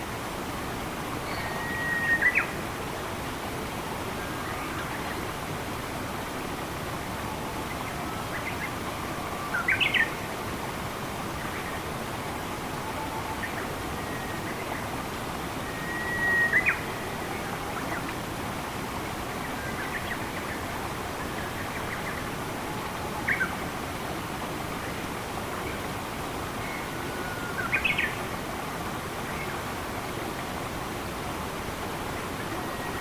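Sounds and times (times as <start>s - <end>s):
running water rushing: 0.0s - 33.0s
bird whistles and chirps: 1.3s - 2.5s, 15.7s - 17.1s.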